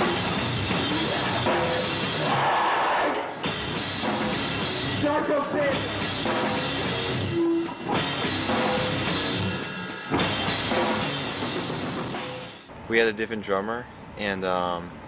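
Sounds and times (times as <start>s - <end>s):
distorted guitars: 0.0s - 12.7s
heavy drums: 0.0s - 12.7s
loud rock band playing: 0.0s - 12.7s.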